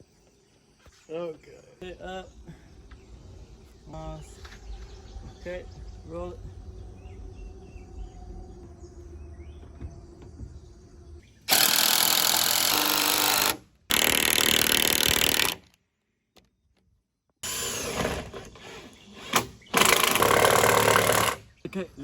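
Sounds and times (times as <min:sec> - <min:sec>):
power tool running: 0:11.5 - 0:15.6, 0:17.4 - 0:21.5.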